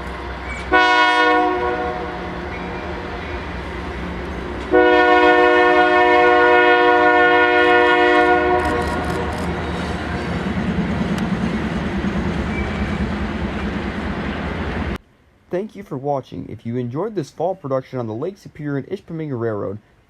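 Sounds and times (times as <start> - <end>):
locomotive engines rumbling: 0.0 - 20.0
locomotive air horn chord: 0.7 - 3.5, 4.7 - 9.8
train wheels rumbling and clattering: 8.2 - 15.0.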